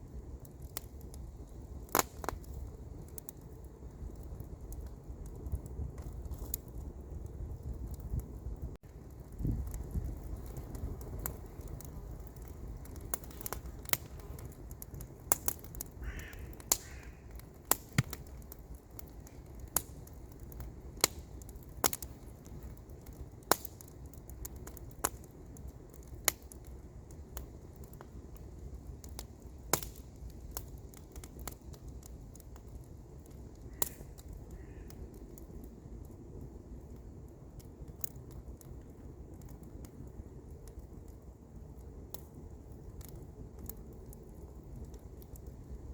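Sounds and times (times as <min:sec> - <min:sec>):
campfire crackling: 0:00.0 - 0:45.9
distant bird calling: 0:16.0 - 0:17.3.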